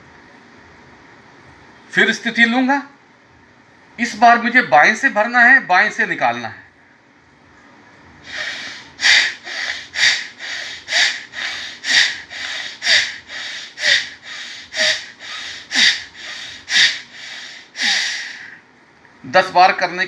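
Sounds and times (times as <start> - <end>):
forceful nasal breathing: 8.2 - 18.7.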